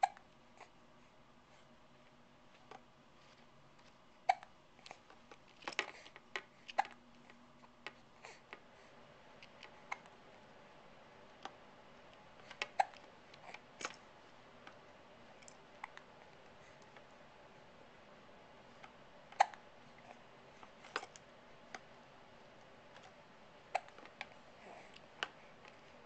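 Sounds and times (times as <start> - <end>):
baby hiccupping: 4.2 - 4.5, 12.6 - 13.1, 19.3 - 19.6, 23.7 - 24.1.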